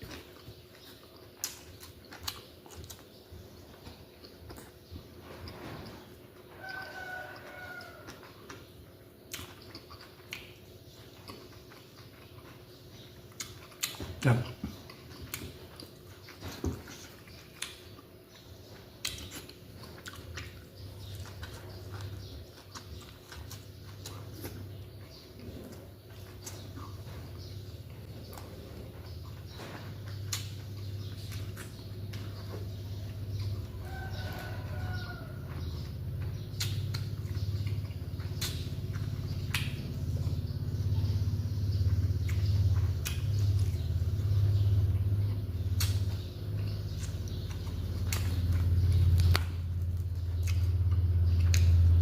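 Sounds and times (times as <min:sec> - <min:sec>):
person chewing: 0:00.0 - 0:52.0
steady low hum: 0:00.0 - 0:52.0.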